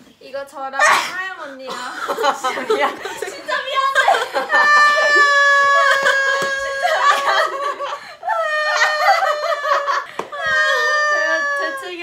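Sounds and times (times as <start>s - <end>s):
young women laughing: 2.0s - 12.0s
young women's high-pitched cries: 3.8s - 12.0s.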